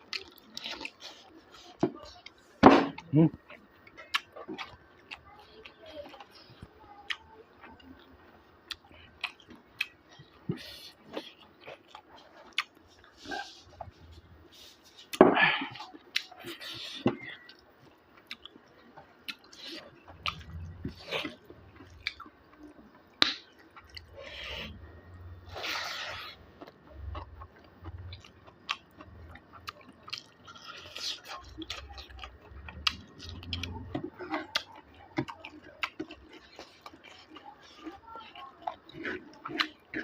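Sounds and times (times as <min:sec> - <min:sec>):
person chewing food: 0:00.0 - 0:40.0.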